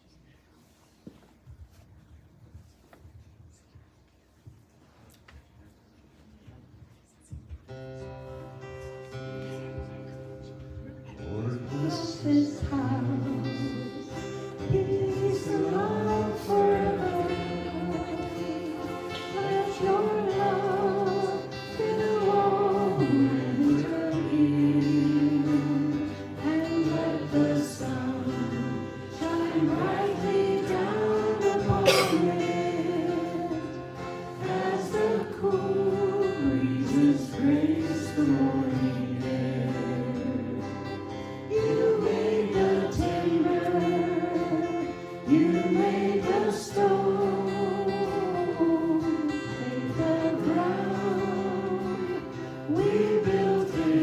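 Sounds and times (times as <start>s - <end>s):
congregation singing: 11.3s - 54.0s.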